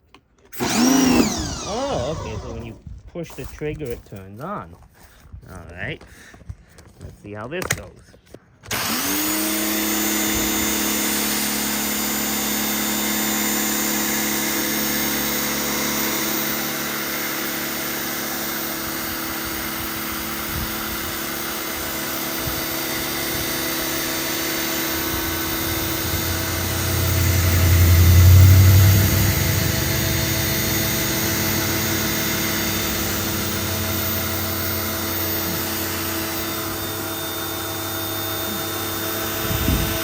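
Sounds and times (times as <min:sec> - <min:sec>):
pressure washer motor humming: 0:00.6 - 0:02.8, 0:08.7 - 0:40.0
low rumble: 0:24.8 - 0:36.0.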